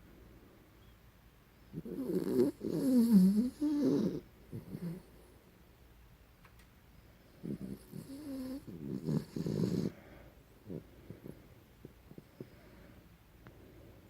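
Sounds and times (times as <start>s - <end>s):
dog snoring: 1.7s - 5.2s, 7.4s - 11.5s.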